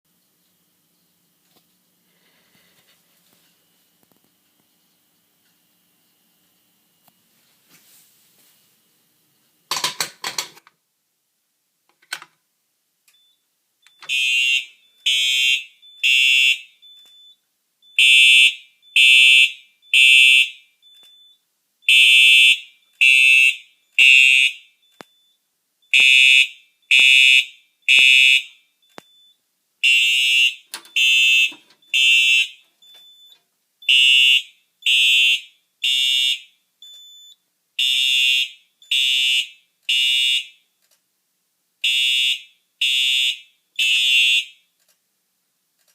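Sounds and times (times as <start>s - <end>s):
fire alarm horn blasts: 14.1s - 16.8s, 18.0s - 20.7s, 21.9s - 24.8s, 25.9s - 28.6s, 29.8s - 32.6s, 33.8s - 36.6s, 37.8s - 40.6s, 41.8s - 44.6s.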